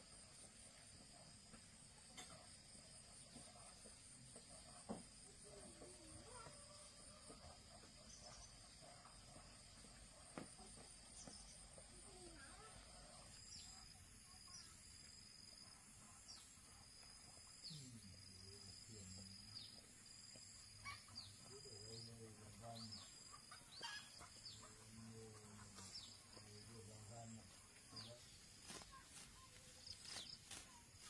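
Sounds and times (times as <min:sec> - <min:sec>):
crickets trilling: 0:10.4 - 0:23.0.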